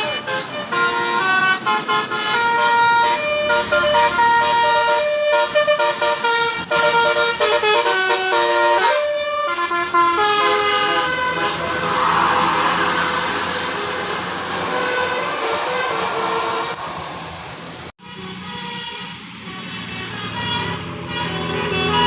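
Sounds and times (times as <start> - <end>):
musical air horn melody: 0.0 - 16.8.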